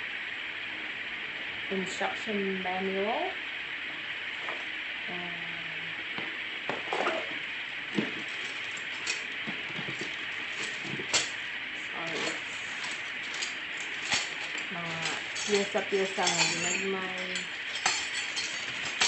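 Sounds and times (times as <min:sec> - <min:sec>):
electric fan hissing: 0:00.0 - 0:19.0
packaging rustling: 0:07.9 - 0:19.0.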